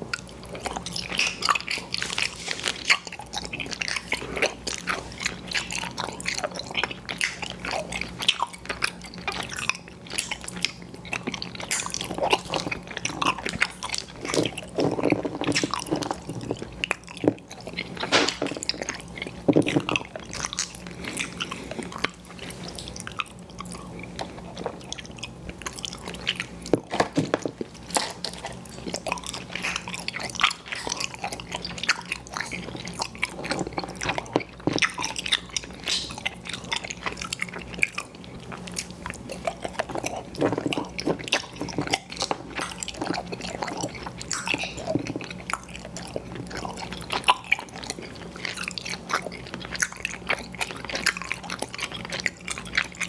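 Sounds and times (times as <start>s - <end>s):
faint steady hum: 0.0s - 53.0s
wet chewing mouth smacks: 27.8s - 53.0s.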